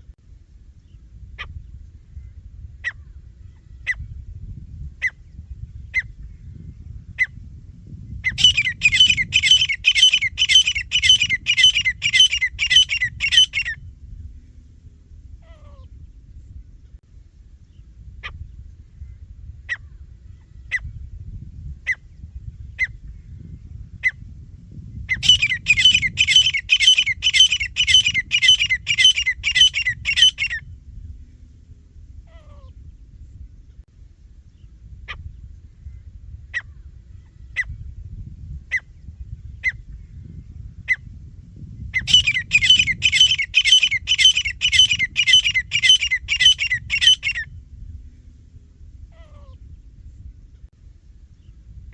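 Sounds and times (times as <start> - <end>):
low background rumble: 0.0 - 51.9
bird calling sharp notes: 8.3 - 13.8, 25.1 - 30.6, 42.0 - 47.4.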